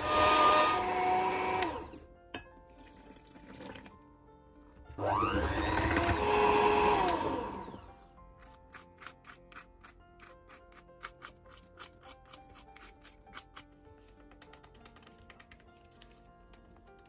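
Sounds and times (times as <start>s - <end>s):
electric hand mixer running: 0.0s - 2.0s, 5.0s - 8.0s.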